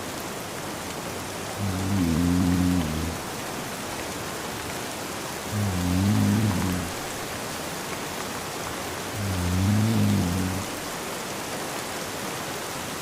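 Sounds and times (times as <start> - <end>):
steady rain: 0.0 - 13.0
man snoring: 1.6 - 3.2, 5.5 - 7.1, 9.2 - 10.8.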